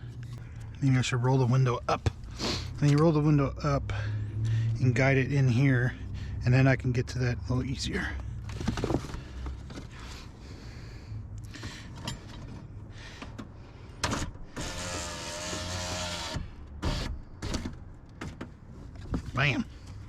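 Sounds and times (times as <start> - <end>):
power window motor whine: 14.6 - 17.1.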